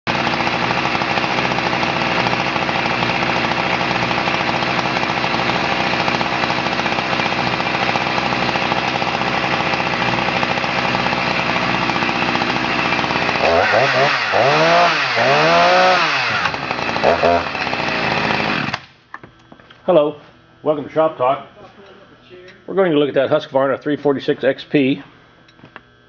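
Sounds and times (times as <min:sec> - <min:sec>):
chainsaw engine running: 0:00.1 - 0:19.0.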